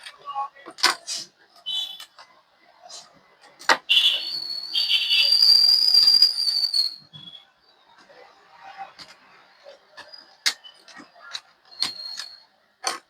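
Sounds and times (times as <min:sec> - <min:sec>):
high whistling tone with hiss: 0:04.2 - 0:07.5.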